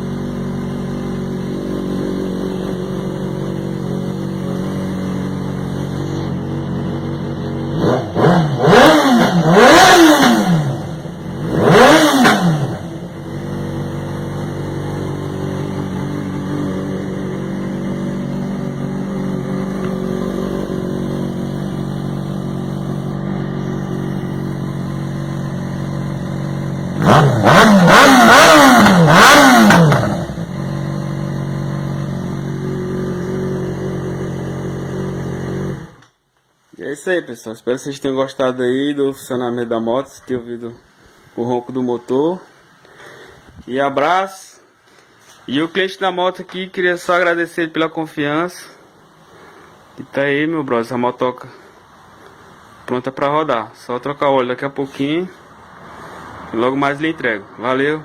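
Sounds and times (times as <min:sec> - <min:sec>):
motorcycle engine idling and revving: 0:00.0 - 0:36.1.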